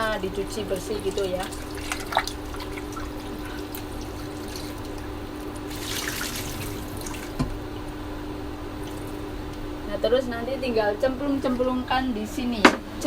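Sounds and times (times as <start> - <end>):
tap water splashing in sink: 0.0 - 7.6, 8.8 - 9.6.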